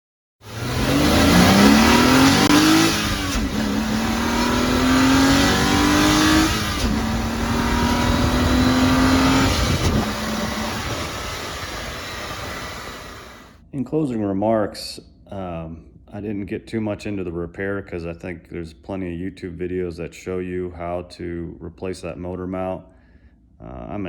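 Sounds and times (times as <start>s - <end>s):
car engine accelerating through gears: 0.4s - 13.5s.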